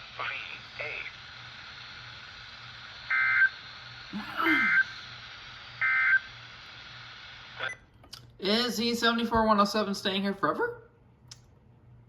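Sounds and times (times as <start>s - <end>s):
radio receiver hiss: 0.0s - 7.8s
digital data tone bursts: 3.1s - 3.6s, 5.8s - 6.4s.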